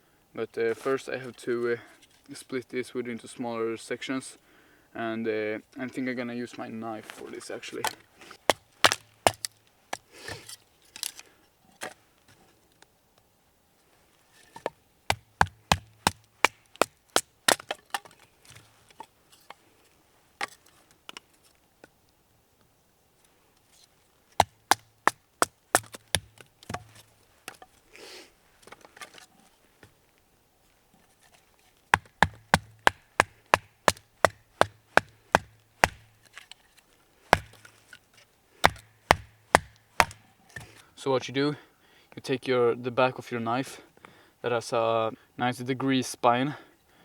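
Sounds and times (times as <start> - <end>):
wood splitting rasp: 7.8 - 11.2, 14.6 - 18.1, 24.4 - 27.6, 31.9 - 36.4, 37.3 - 37.8, 38.6 - 40.8
baton knocking on knife spine: 8.5 - 9.5, 15.1 - 17.7, 24.4 - 25.2, 32.0 - 36.1, 37.4 - 37.6, 38.6 - 40.7.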